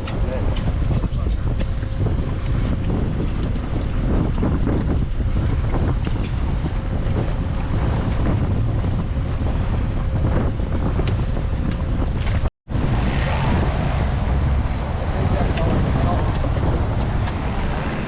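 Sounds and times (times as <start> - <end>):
wind buffeting microphone: 0.0 - 18.0
water washing: 12.1 - 18.0.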